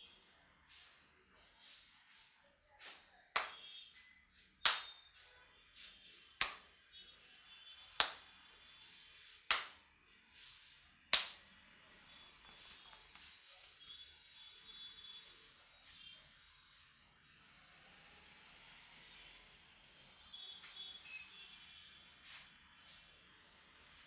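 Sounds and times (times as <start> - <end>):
hand slaps on head: 3.4 - 3.6, 4.7 - 5.0, 6.4 - 6.6, 8.0 - 8.2, 9.5 - 9.8, 11.2 - 11.4.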